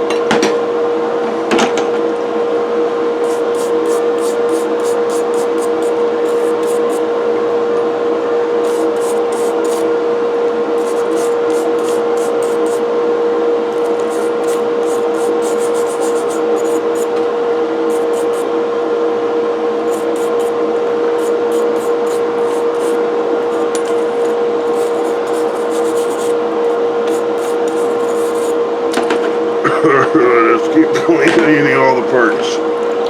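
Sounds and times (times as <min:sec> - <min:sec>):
wire brush wheel humming: 0:03.1 - 0:07.6, 0:08.5 - 0:10.0, 0:10.6 - 0:18.7, 0:19.6 - 0:29.1
bristles scratching metal: 0:03.2 - 0:07.1, 0:08.6 - 0:09.9, 0:10.8 - 0:12.8, 0:13.7 - 0:17.2, 0:17.8 - 0:18.5, 0:19.8 - 0:29.1.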